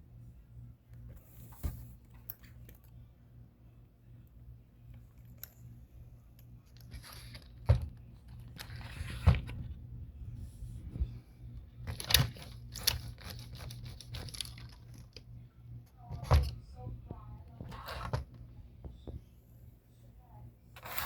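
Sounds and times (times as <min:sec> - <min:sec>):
steady low hum: 0:00.0 - 0:21.0
plastic toy handling noise: 0:06.6 - 0:09.8, 0:11.0 - 0:15.3, 0:17.4 - 0:19.2.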